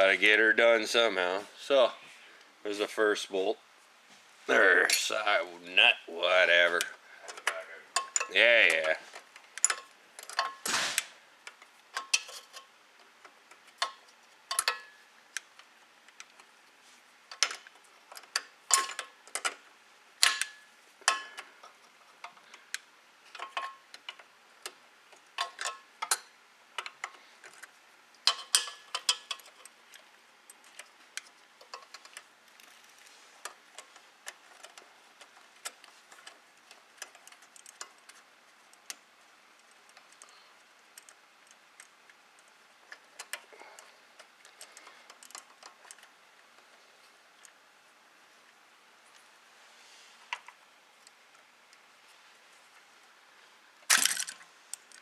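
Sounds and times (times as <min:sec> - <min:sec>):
hand tools clicking on metal: 0:06.6 - 0:09.0, 0:13.8 - 0:14.9.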